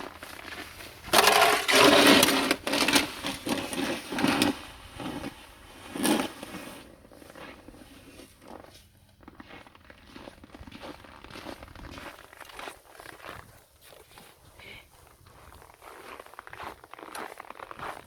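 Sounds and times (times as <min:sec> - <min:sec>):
snow shovel scraping snow: 0:00.1 - 0:08.9.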